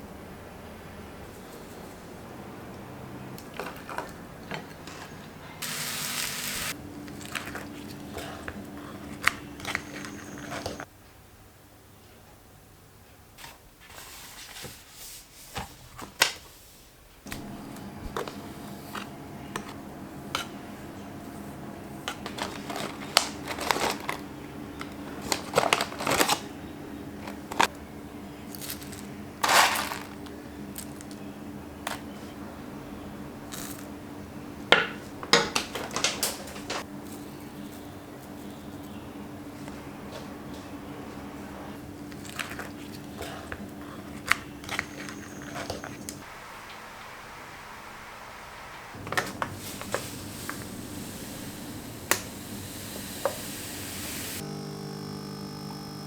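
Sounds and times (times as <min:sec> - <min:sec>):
electric appliance hum: 0:05.6 - 0:10.9, 0:17.2 - 0:46.3, 0:48.8 - 0:56.0.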